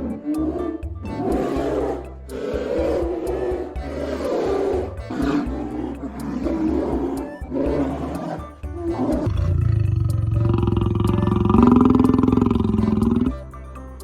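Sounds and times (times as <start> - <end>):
animal growling: 0.0 - 13.3
music: 0.0 - 14.0.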